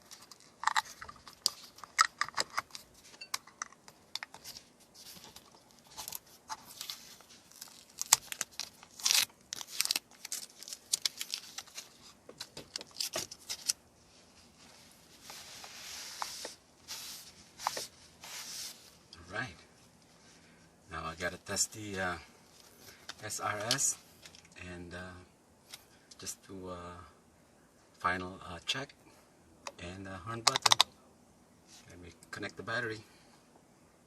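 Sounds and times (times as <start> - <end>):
small parts clicking and tapping: 0.0 - 4.5, 30.5 - 30.9
rubbing hiss: 14.6 - 19.0.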